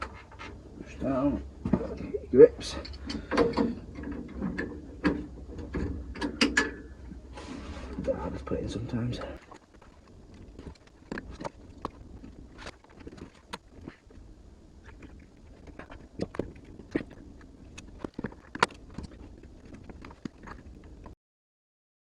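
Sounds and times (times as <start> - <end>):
hands clicking and knocking on plastic part: 2.9 - 6.9.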